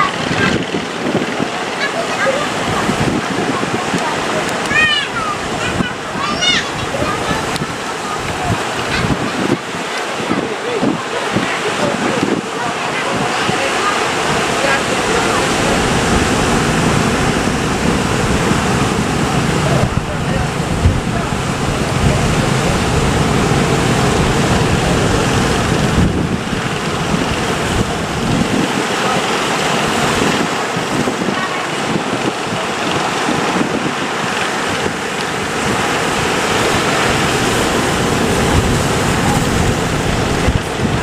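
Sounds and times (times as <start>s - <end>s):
surf breaking: 0.0s - 41.0s
wind buffeting microphone: 0.0s - 41.0s.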